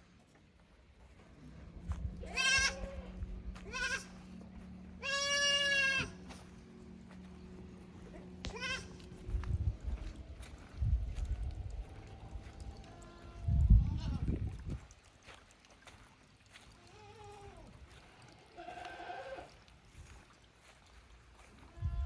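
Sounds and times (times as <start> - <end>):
faint low hum: 0.0 - 14.9
kid goats bleating: 2.2 - 6.4, 8.4 - 9.2, 12.8 - 14.3, 16.8 - 17.7, 18.4 - 19.5, 21.6 - 22.0.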